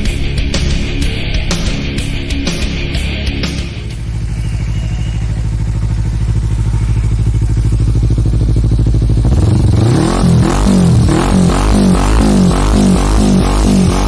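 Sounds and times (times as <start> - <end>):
rock music: 0.0 - 5.7
motorcycle engine idling: 0.0 - 14.0.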